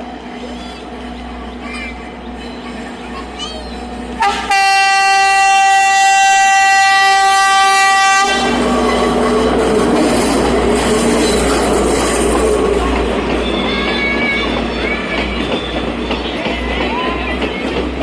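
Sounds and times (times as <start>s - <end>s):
train rumbling on rails: 0.0s - 18.0s
train horn blast: 4.1s - 9.2s.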